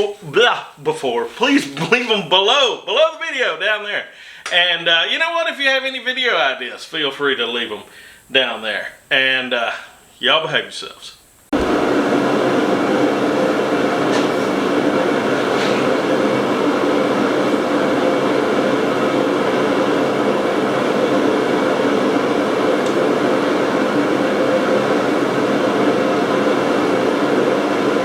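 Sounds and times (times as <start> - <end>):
machine whirring and humming: 11.5 - 28.0.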